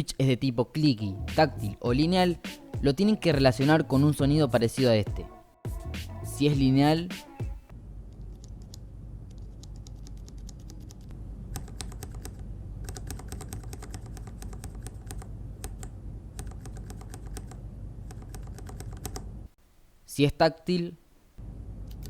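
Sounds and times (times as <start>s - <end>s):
mechanical keyboard typing: 8.3s - 19.2s.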